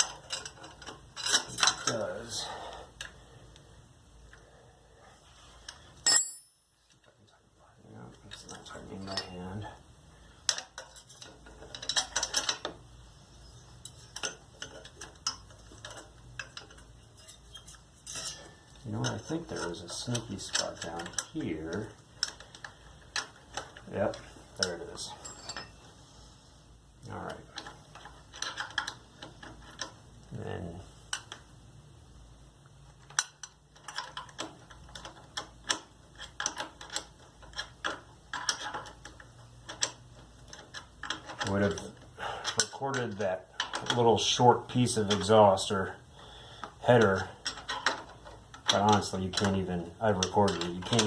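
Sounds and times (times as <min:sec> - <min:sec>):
metal tools clinking: 0:00.0 - 0:02.4, 0:06.0 - 0:07.2, 0:08.3 - 0:09.6, 0:13.8 - 0:22.6, 0:23.5 - 0:25.9.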